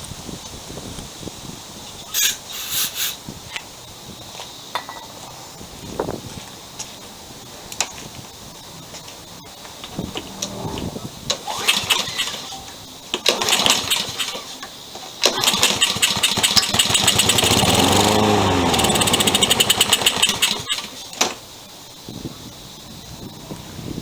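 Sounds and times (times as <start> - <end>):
lawn mower engine running: 2.0 - 3.2, 8.9 - 21.6
engine sputtering burst: 9.5 - 21.2.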